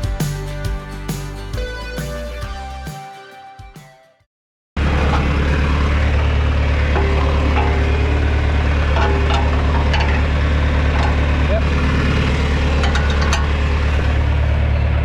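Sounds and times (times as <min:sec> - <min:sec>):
tractor engine humming: 0:04.8 - 0:15.0.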